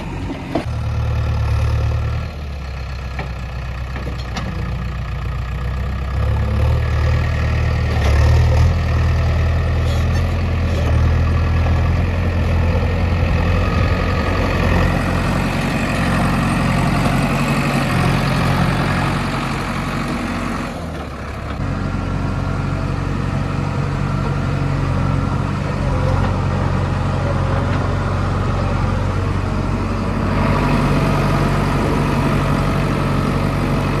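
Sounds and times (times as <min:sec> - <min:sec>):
heavy diesel engine running: 0:00.0 - 0:34.0.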